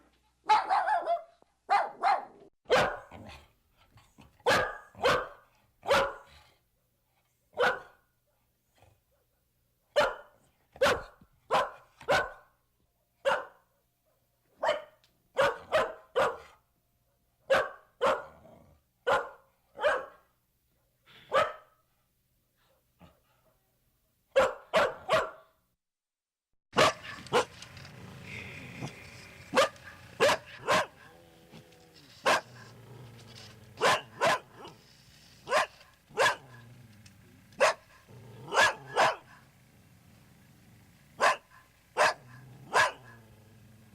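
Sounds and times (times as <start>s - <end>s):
dog barking: 0.4s - 3.4s, 4.4s - 6.4s, 7.5s - 8.0s, 9.9s - 12.5s, 13.2s - 13.7s, 14.6s - 16.6s, 17.5s - 18.4s, 19.0s - 20.3s, 21.2s - 21.8s, 24.3s - 25.6s, 26.8s - 27.6s, 28.8s - 31.2s, 32.2s - 32.7s, 33.8s - 34.8s, 35.4s - 36.7s, 37.6s - 39.5s, 41.2s - 43.3s.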